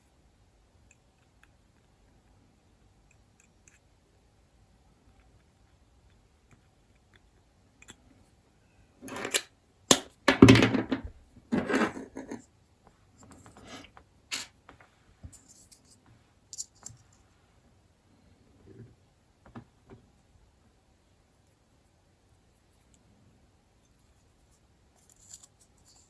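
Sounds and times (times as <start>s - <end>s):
knife parts scraping and clicking: 9.0s - 9.5s.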